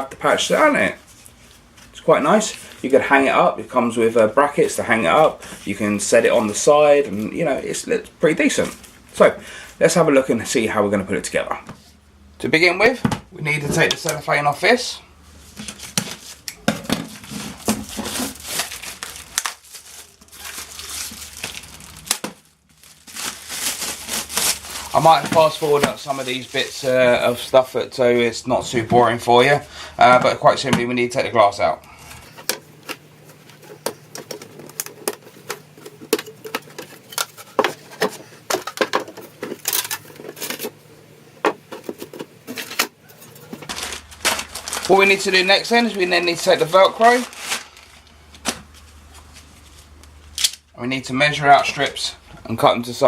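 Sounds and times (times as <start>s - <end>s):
cellophane crinkling: 15.5s - 27.8s, 32.0s - 50.8s.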